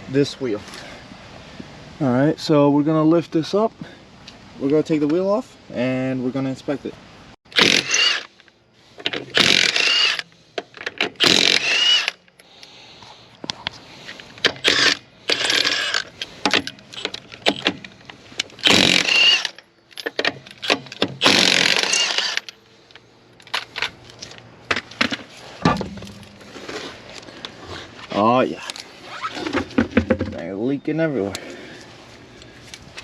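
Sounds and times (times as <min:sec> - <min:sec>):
power tool whine: 0:07.6 - 0:08.3, 0:11.2 - 0:12.2, 0:18.6 - 0:19.6.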